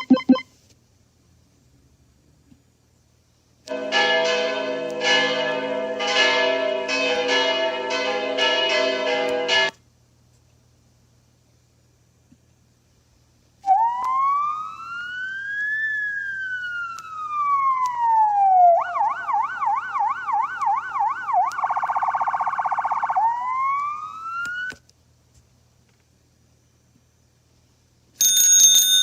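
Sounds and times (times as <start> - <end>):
police siren: 13.6 - 24.8.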